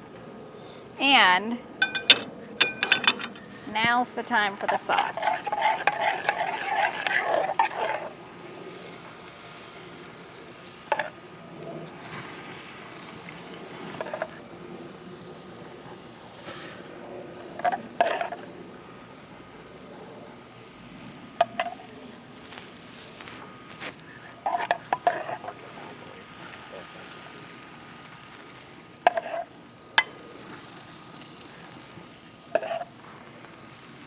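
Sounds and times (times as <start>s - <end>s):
metal spoon clinking on a dish: 1.8s - 3.6s, 4.6s - 8.1s.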